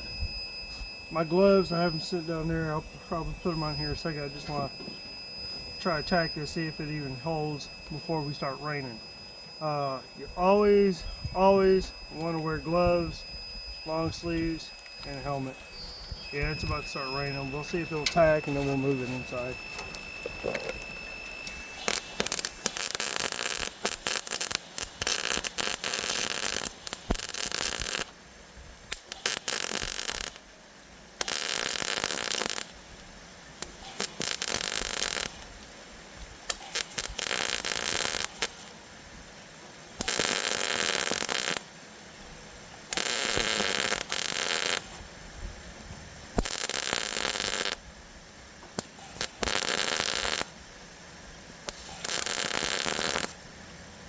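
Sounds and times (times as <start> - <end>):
high whistle: 0.0 - 24.0
welder arc crackling: 0.0 - 53.8.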